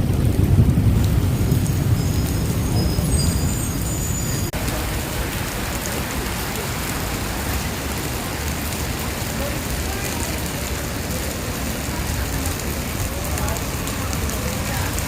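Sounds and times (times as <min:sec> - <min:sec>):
low thunder rumble: 0:00.0 - 0:08.2
heavy rain pouring: 0:00.0 - 0:15.0.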